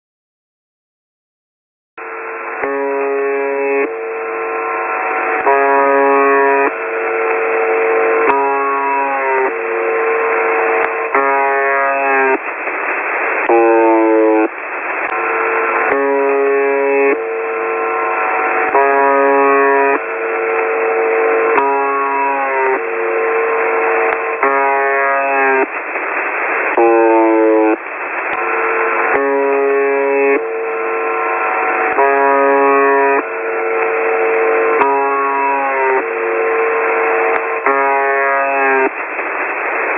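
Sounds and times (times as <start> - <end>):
emergency alert alarm tones: 2.6 - 12.4, 13.5 - 14.5, 15.1 - 25.7, 26.8 - 27.8, 28.4 - 38.9
steady hiss: 12.0 - 16.0, 25.4 - 29.2, 38.6 - 39.9.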